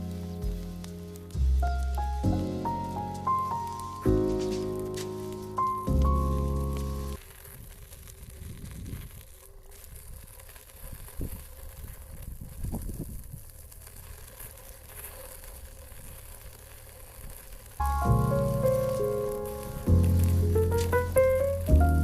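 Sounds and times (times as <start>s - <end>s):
scooter wheels rumbling: 1.8s - 22.0s
wind on microphone: 7.6s - 10.2s, 10.8s - 13.5s.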